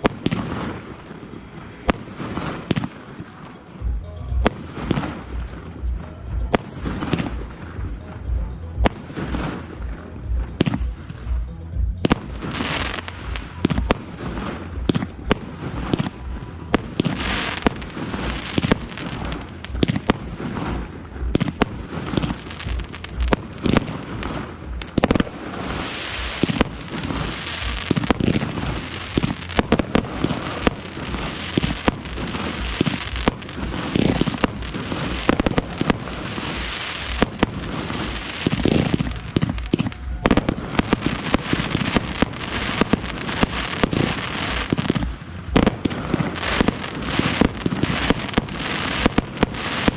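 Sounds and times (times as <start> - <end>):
firework crackle: 0.0 - 49.9
firework shells bursting: 16.8 - 49.9.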